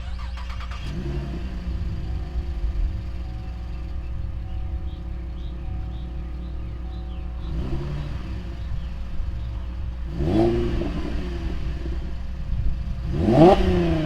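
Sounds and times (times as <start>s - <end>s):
car engine idling and revving: 0.0s - 14.0s.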